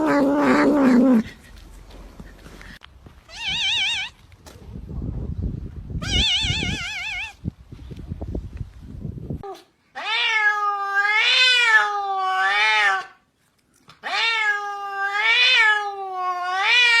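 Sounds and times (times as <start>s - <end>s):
cat meowing: 0.0s - 1.3s, 3.3s - 4.2s, 6.0s - 7.4s, 9.4s - 13.2s, 14.0s - 17.0s.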